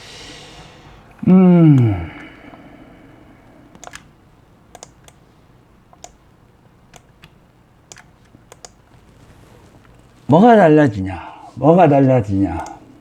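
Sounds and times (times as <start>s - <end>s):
computer mouse clicks: 3.7s - 4.1s, 4.7s - 5.2s, 5.9s - 6.2s, 6.9s - 9.1s, 12.6s - 12.8s.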